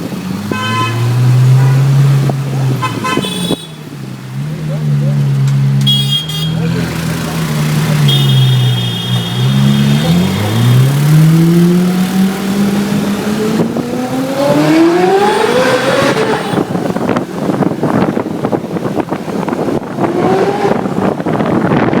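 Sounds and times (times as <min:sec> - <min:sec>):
sports car engine revving: 0:09.2 - 0:21.9.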